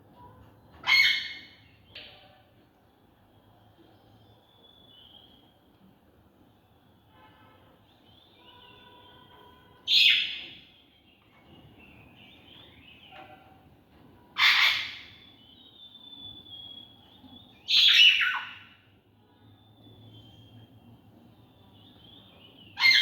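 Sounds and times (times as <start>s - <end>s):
birds chirping and whistling: 9.9s - 10.6s, 14.4s - 18.8s, 19.6s - 20.8s, 21.7s - 23.0s.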